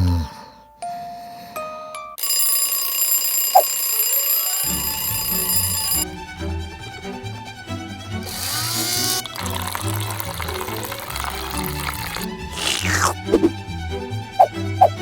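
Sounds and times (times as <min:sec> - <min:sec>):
alarm clock ringing: 0:02.2 - 0:06.0
background music: 0:04.6 - 0:15.0.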